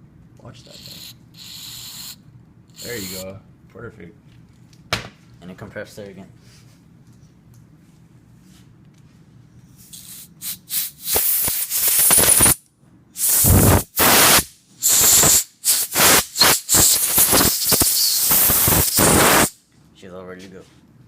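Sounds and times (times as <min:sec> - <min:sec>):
compressed air hissing bursts: 0:00.7 - 0:03.3, 0:09.9 - 0:12.6, 0:13.2 - 0:19.6.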